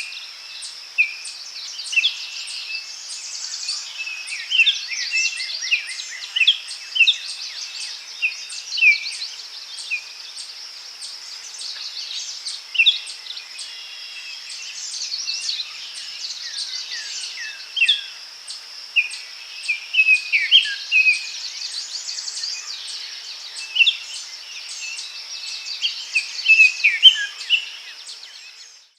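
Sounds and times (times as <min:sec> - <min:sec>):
high insect drone: 0:00.0 - 0:28.9
birds chirping and whistling: 0:19.0 - 0:28.9.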